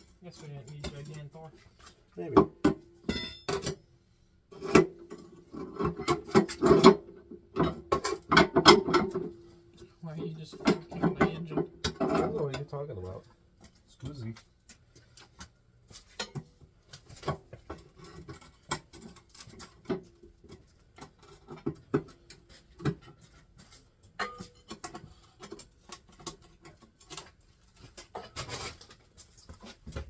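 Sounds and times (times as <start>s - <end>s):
metal tools clinking on engine: 3.0s - 3.8s, 23.4s - 27.3s.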